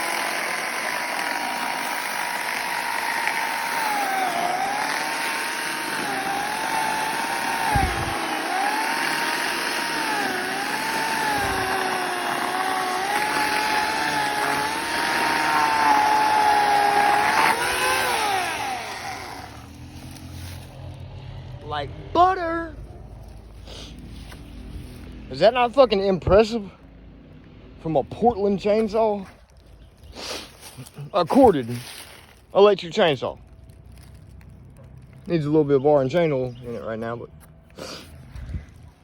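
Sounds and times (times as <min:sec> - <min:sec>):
electric chainsaw cutting wood: 0:00.0 - 0:20.7.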